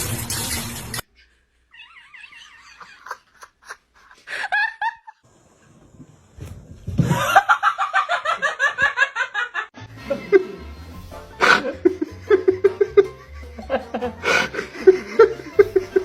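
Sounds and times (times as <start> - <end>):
person laughing hard: 2.2 - 5.2, 7.1 - 10.7, 11.4 - 16.0
background music with bass: 9.8 - 16.0.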